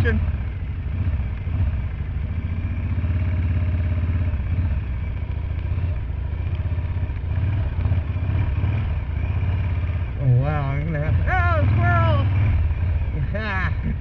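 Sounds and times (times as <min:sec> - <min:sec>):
motorcycle engine rumble: 0:00.0 - 0:14.0.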